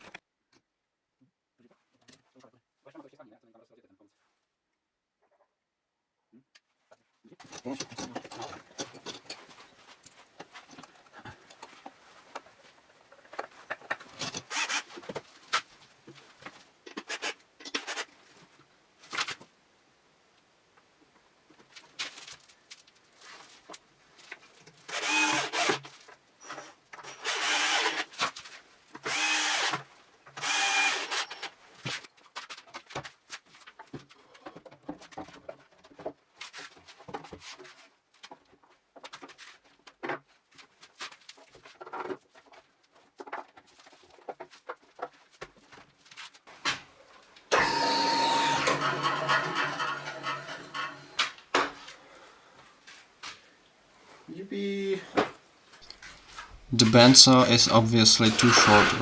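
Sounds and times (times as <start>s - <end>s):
power drill bursts: 14.2s - 15.0s, 24.9s - 25.8s, 27.1s - 28.2s, 29.0s - 29.8s, 30.4s - 31.5s, 47.5s - 51.4s, 56.5s - 59.0s
workshop handling clicks and knocks: 47.5s - 51.8s.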